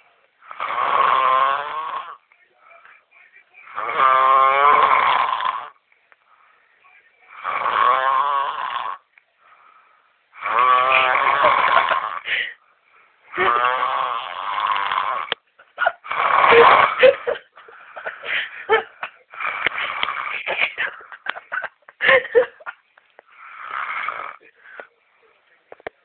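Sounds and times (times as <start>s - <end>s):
person snoring: 0.5s - 2.2s, 3.6s - 5.8s, 7.3s - 9.0s, 10.4s - 12.6s, 13.3s - 15.4s, 16.0s - 21.2s, 23.3s - 24.6s
short snorts: 19.4s - 20.7s.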